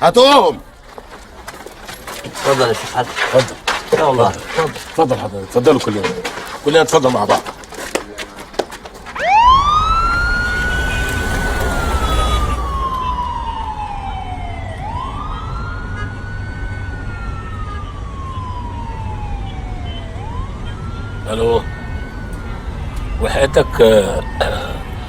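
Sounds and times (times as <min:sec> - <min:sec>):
police siren wailing: 0:09.1 - 0:25.0.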